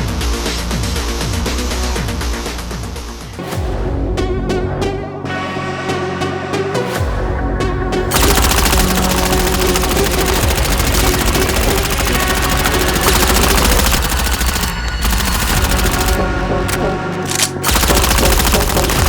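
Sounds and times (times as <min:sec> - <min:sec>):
electronic background music: 0:06.0 - 0:19.0
rapid blaster fire: 0:08.1 - 0:19.0.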